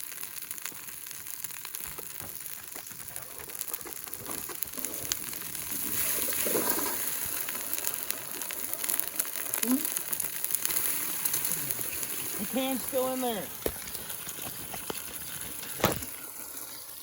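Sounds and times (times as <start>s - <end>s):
sharp crackles: 0.0s - 17.0s
toaster oven hissing: 3.1s - 17.0s.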